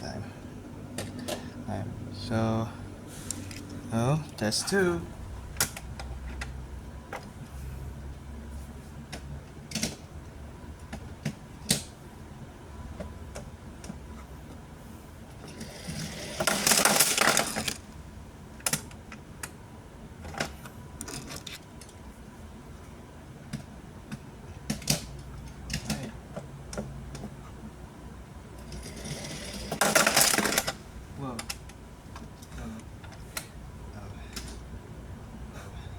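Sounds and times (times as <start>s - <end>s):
toy car rattling along track: 15.5s - 17.8s, 28.7s - 30.8s.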